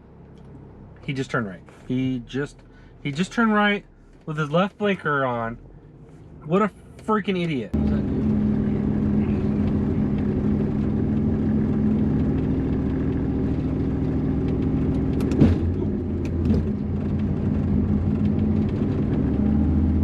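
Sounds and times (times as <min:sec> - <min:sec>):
car engine running: 0:00.0 - 0:20.0
road rumble: 0:00.0 - 0:20.0
sharp thump: 0:15.2 - 0:16.7.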